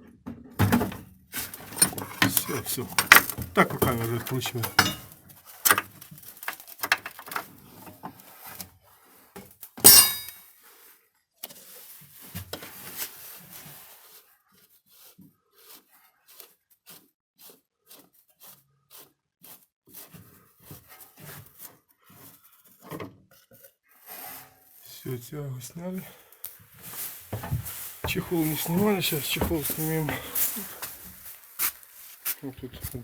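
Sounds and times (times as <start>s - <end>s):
metal rubbing: 1.4s - 5.1s, 9.9s - 10.3s
metallic clink: 4.8s - 5.1s, 9.9s - 10.3s.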